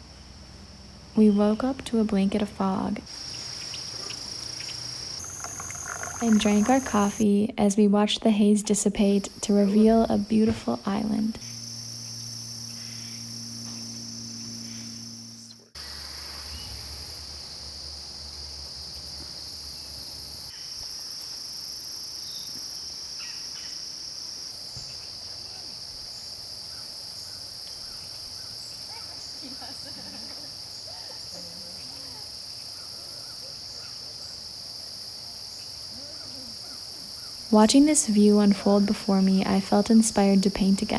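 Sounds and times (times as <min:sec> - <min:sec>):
crickets trilling: 0:00.0 - 0:07.2, 0:09.0 - 0:40.9
low steady hum: 0:00.0 - 0:07.7, 0:08.7 - 0:16.1, 0:37.5 - 0:40.9
faint bird chirps: 0:03.1 - 0:07.2.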